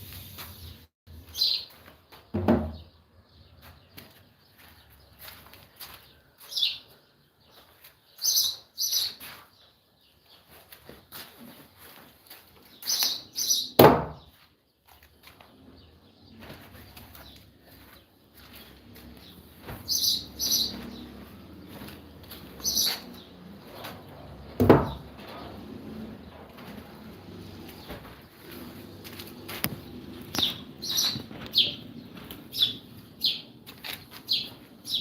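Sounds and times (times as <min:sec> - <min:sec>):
sharp knocks: 0:13.8 - 0:14.3, 0:24.6 - 0:25.1
high bird chirps: 0:19.2 - 0:23.8, 0:29.4 - 0:33.6, 0:34.2 - 0:35.0.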